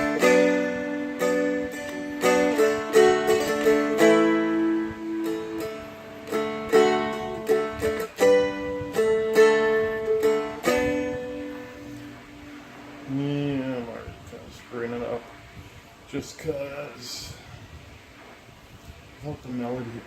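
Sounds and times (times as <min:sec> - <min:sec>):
strummed dulcimer chords: 0:00.0 - 0:12.6.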